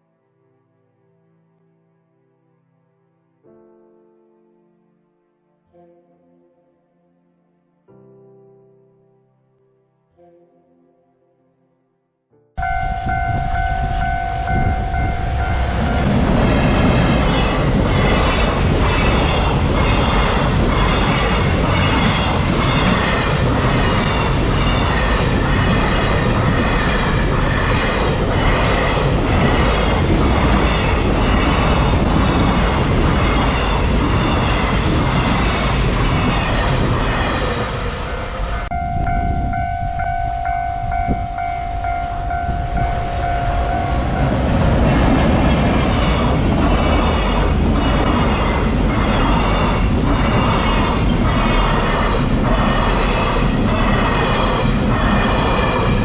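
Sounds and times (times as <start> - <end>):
train horn blast: 12.6 - 16.1
freight train rumbling past: 12.6 - 56.0.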